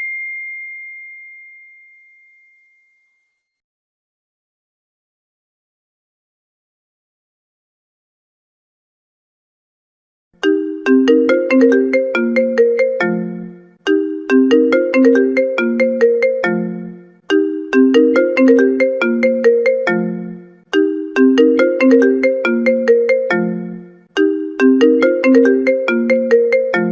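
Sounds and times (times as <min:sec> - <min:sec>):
phone ringtone melody: 0:10.4 - 0:26.9.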